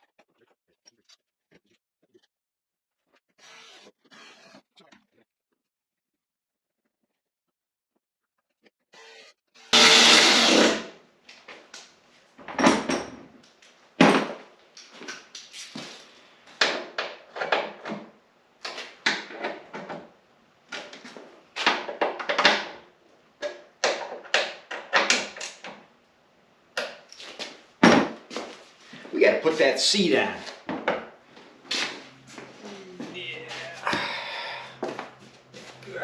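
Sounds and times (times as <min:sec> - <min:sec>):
loud noise: 0:09.7 - 0:10.9
tools and parts clattering: 0:12.4 - 0:13.3, 0:16.6 - 0:18.1, 0:20.7 - 0:22.8.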